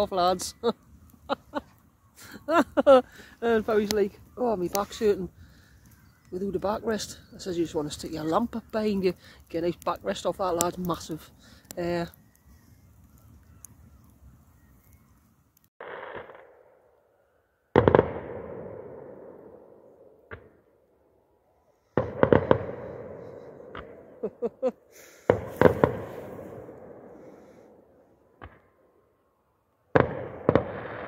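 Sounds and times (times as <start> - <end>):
small firework pops: 15.8 - 16.5, 17.8 - 18.9, 22.0 - 24.1, 25.2 - 26.9, 28.4 - 28.7, 29.9 - 31.0
fireworks exploding: 15.8 - 16.6, 17.7 - 19.7, 22.0 - 24.2, 24.9 - 27.4, 29.9 - 31.0.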